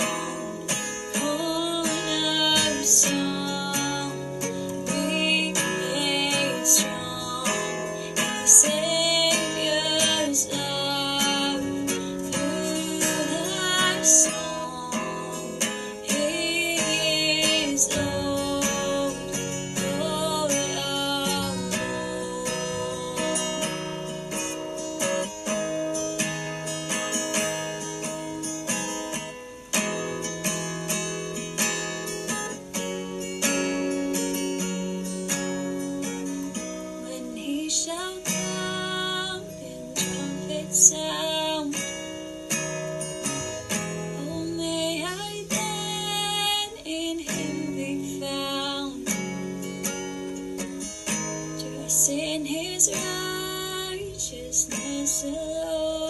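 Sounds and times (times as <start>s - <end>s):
woman singing: 0.0s - 25.6s, 36.5s - 56.0s
acoustic guitar strumming: 0.0s - 56.0s.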